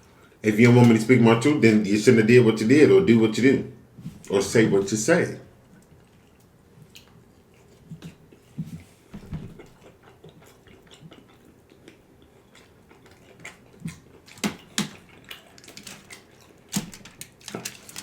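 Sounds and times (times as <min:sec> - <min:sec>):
person chewing with mouth smacks: 0:05.7 - 0:16.7.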